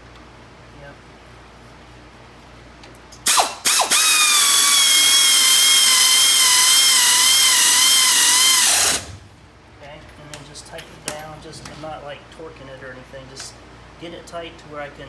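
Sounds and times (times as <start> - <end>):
power ratchet whining: 3.2 - 9.2.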